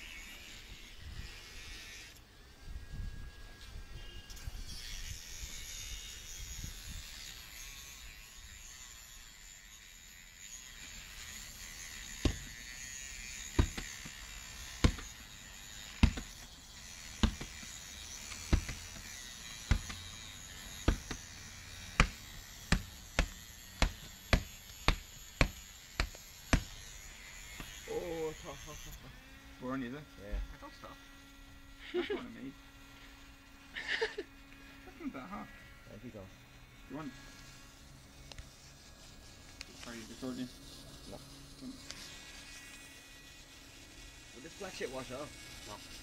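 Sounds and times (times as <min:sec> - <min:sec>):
rotary tool grinding steel: 0:00.0 - 0:46.0.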